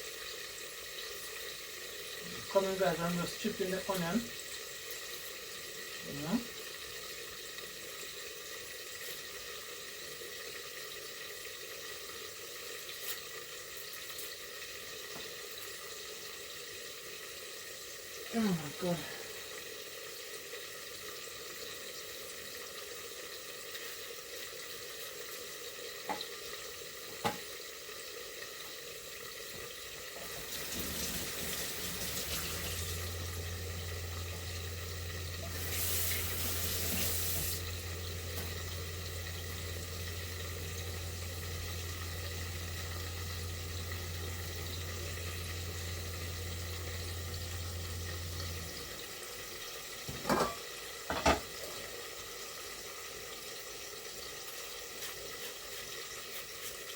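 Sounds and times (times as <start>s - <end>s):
tap running into sink: 15.1s - 15.7s, 26.0s - 27.6s, 29.4s - 49.0s, 50.0s - 51.9s
steady low hum: 31.8s - 49.4s.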